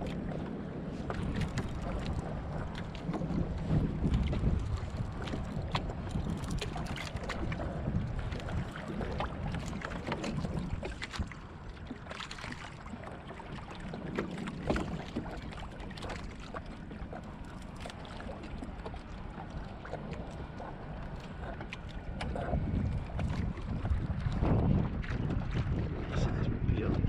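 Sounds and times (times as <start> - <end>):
water slapping boat hull: 0.0 - 27.0
wind buffeting microphone: 0.0 - 27.0.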